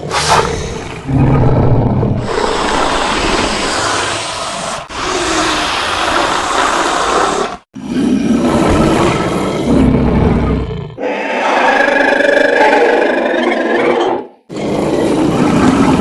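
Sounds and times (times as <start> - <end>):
raspy dinosaur roars: 7.2 - 16.0.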